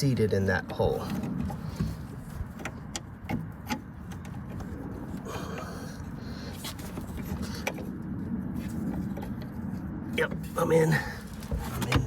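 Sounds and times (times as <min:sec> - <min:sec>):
car door parts clicking: 0:11.4 - 0:12.0.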